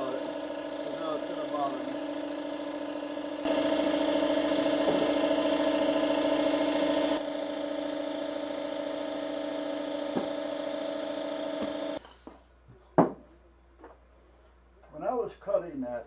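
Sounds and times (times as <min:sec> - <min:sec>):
electric power tool motor whining: 0:00.0 - 0:12.0.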